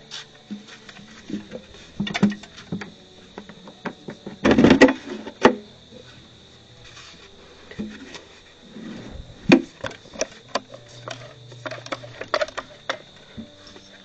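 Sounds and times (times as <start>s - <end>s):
clattering rattle: 9.5s - 13.6s.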